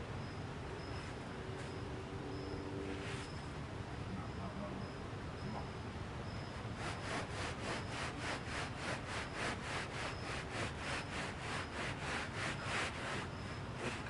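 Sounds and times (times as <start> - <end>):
scraping strokes over wet concrete: 6.7 - 14.0.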